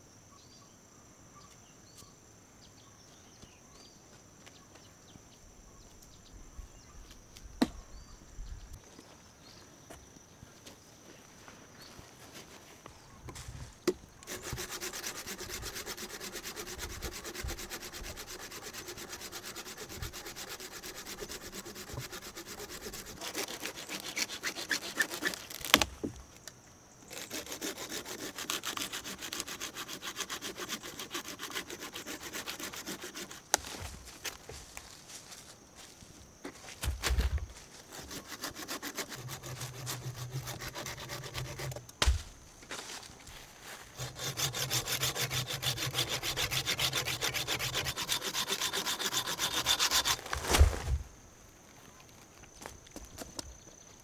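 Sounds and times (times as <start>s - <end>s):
hand saw cutting wood: 14.2s - 26.2s, 27.1s - 35.2s, 36.6s - 51.0s
sharp knock: 42.0s - 42.4s.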